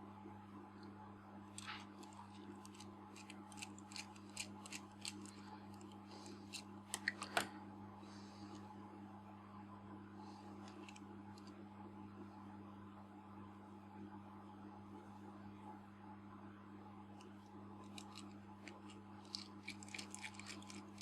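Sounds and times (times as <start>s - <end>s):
steady low hum: 0.0s - 21.0s
tools clicking on lens parts: 1.6s - 7.4s.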